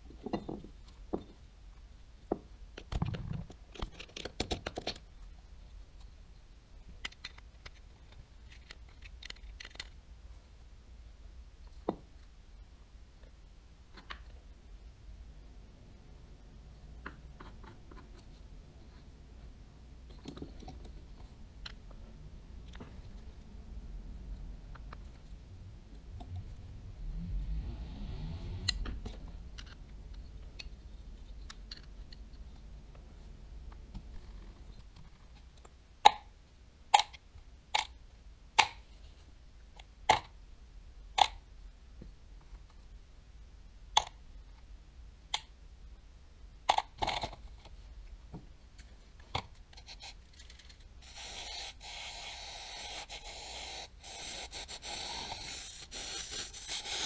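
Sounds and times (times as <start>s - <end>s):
hard parts clicking and tapping: 6.9s - 10.0s
steady hiss: 49.8s - 57.0s.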